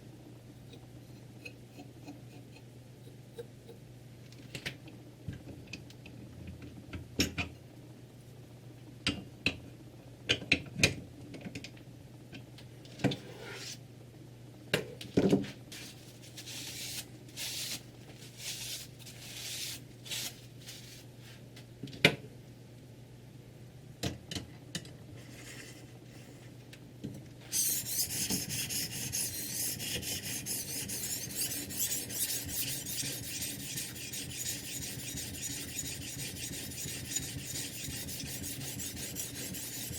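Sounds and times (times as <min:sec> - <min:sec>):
sharpening stone rasping on knife: 0:27.5 - 0:39.9.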